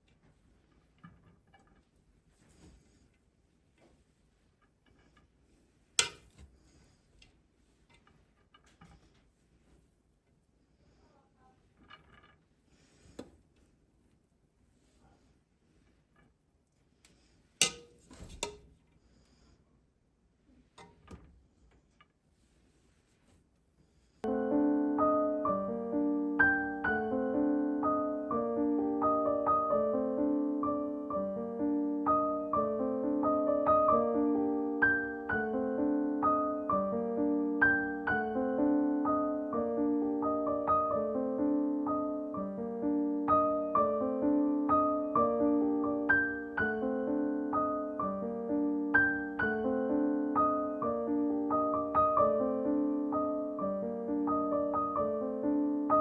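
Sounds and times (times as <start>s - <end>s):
gentle piano music: 24.2s - 56.0s.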